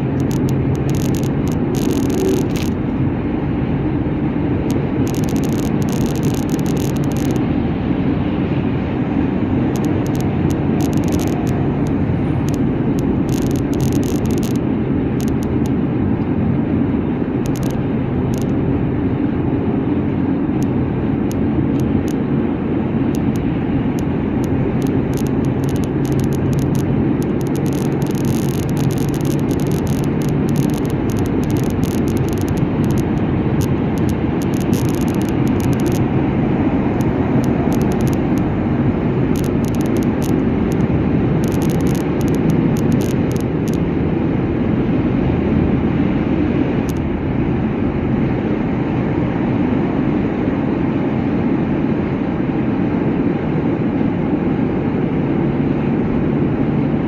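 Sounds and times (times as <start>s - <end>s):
light crackling: 0.0s - 3.0s, 4.6s - 7.6s, 9.5s - 15.9s, 17.3s - 18.6s, 20.5s - 22.2s, 23.0s - 44.0s
vehicle road noise rumble: 0.0s - 57.0s.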